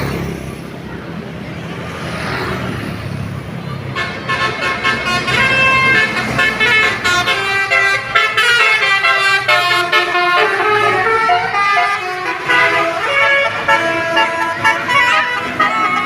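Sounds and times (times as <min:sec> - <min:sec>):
multi-tone horn melody: 0:04.0 - 0:16.0.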